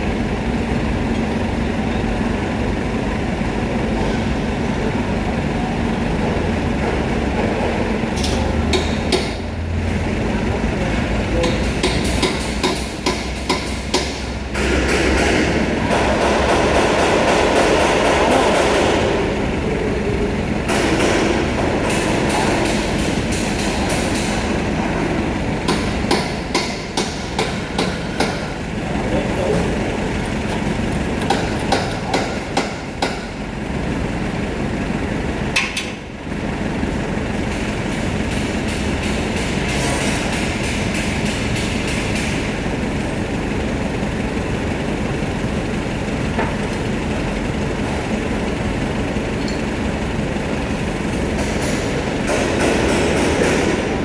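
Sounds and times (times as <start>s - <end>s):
loud noisy machine running: 0.0s - 54.0s
steady mechanical hum: 0.0s - 54.0s.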